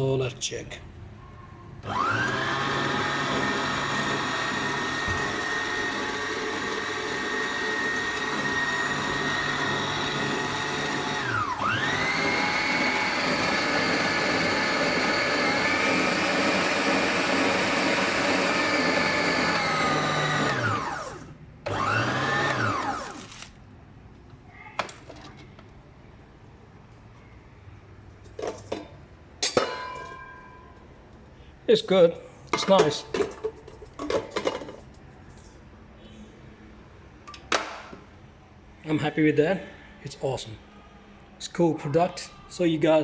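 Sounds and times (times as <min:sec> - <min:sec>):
stand mixer motor whining: 0:01.8 - 0:23.5.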